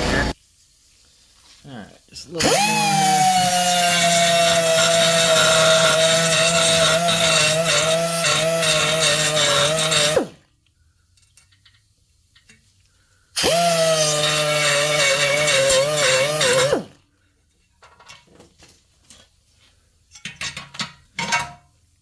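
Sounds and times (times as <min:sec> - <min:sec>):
air tool high whine: 0:02.4 - 0:10.4, 0:13.4 - 0:17.0.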